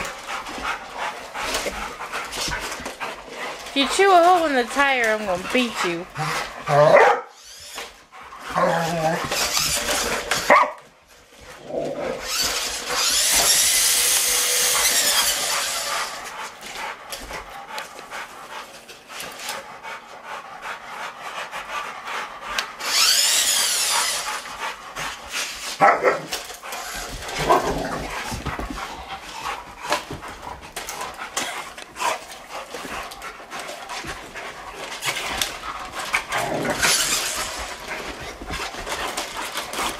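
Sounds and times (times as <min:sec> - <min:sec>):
dogs barking and whining: 0:00.0 - 0:39.9
toy truck electric motor whining: 0:07.3 - 0:10.5, 0:12.2 - 0:16.4, 0:22.6 - 0:24.7, 0:26.3 - 0:27.4, 0:35.4 - 0:38.2.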